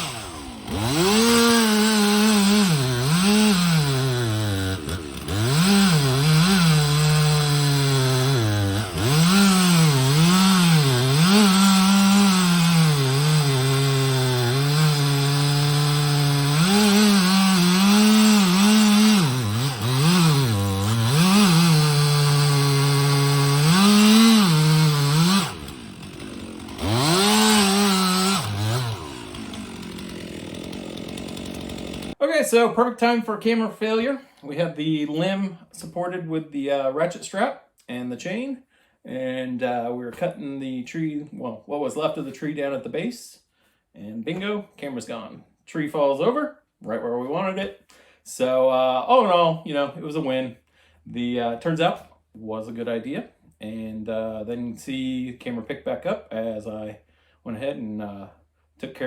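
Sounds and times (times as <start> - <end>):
chainsaw cutting wood: 0.0 - 32.2.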